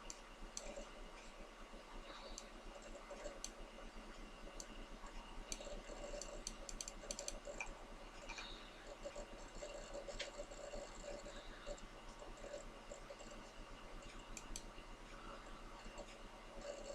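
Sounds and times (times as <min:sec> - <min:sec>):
low steady hum: 0:00.0 - 0:16.9
keyboard and mouse clicks: 0:05.4 - 0:13.4, 0:14.0 - 0:14.7.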